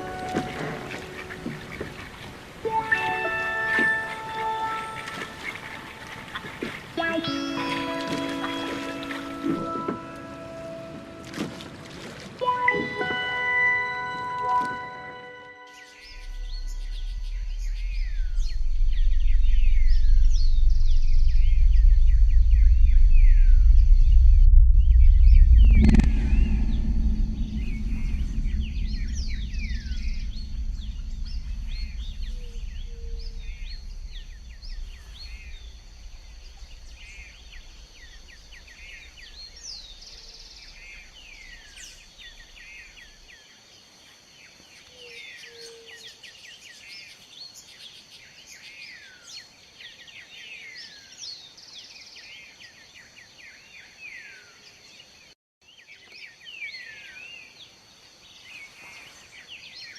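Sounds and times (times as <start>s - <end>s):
birds chirping and calling: 0.0s - 21.6s
low rumble: 15.9s - 43.3s.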